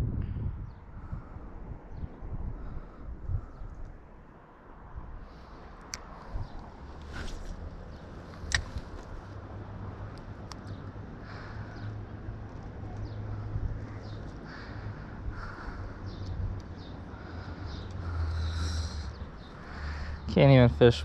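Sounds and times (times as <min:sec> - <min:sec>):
faint bird calls: 0:12.9 - 0:20.3.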